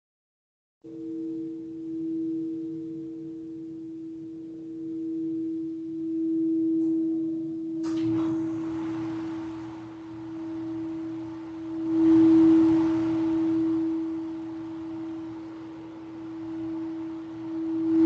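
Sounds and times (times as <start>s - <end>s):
singing bowl ringing: 0.9s - 18.0s
singing bowl strike: 5.0s - 18.0s.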